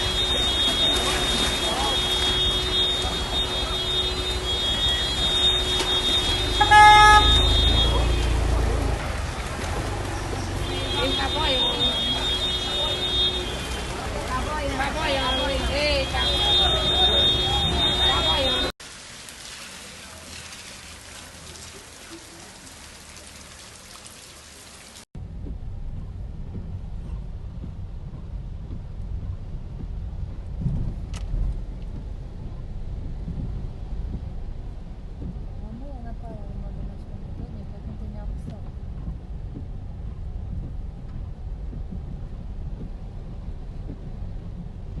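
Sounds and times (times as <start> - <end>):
steady rain falling: 0.0 - 25.1
passing traffic: 0.0 - 45.0
low rumble: 25.2 - 45.0
wind buffeting microphone: 25.2 - 45.0.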